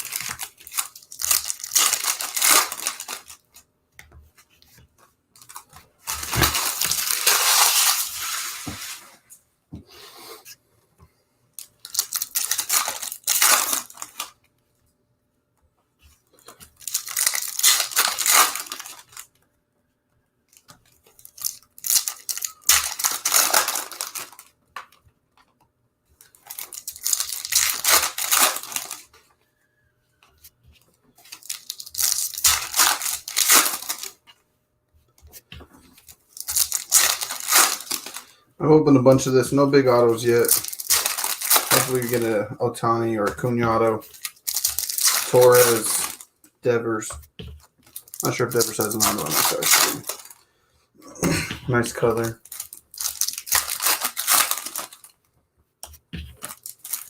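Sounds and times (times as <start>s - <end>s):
foil wrappers tearing and crinkling: 0.0s - 3.6s, 5.4s - 9.1s, 11.8s - 14.4s, 16.4s - 19.3s, 20.6s - 24.5s, 26.2s - 29.1s, 31.2s - 34.2s, 35.9s - 38.3s, 39.0s - 46.4s, 47.8s - 50.4s, 51.8s - 55.2s, 55.8s - 57.0s.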